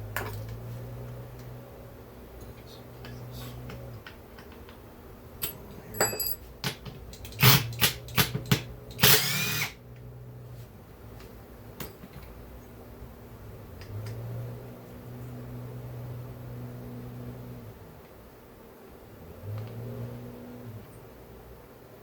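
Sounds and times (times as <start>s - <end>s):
power driver spinning: 8.9s - 9.8s.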